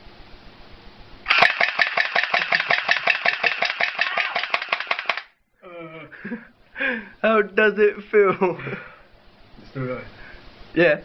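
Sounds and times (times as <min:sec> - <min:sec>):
airsoft gun firing full auto: 0:01.3 - 0:05.3.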